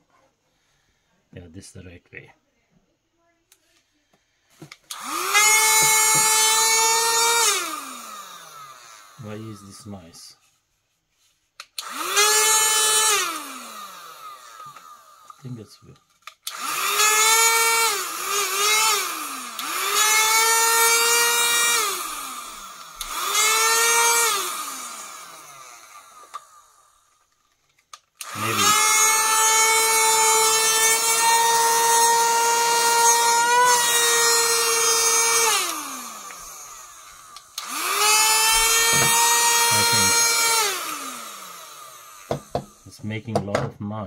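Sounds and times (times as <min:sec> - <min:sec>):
handheld vacuum motor whining: 0:04.6 - 0:09.9, 0:11.6 - 0:43.2.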